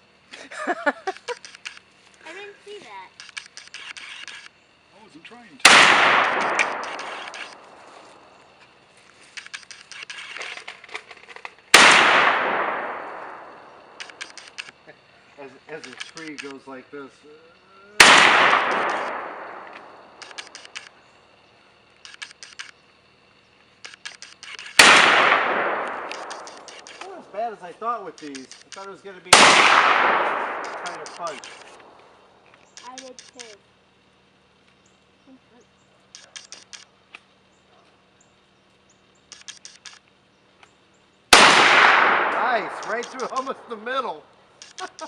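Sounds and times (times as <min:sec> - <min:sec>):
rifle shot with echo: 0:05.6 - 0:08.3, 0:11.7 - 0:14.6, 0:18.0 - 0:20.8, 0:24.7 - 0:27.2, 0:29.3 - 0:32.2, 0:41.3 - 0:43.8
quick high ticks: 0:39.3 - 0:40.1.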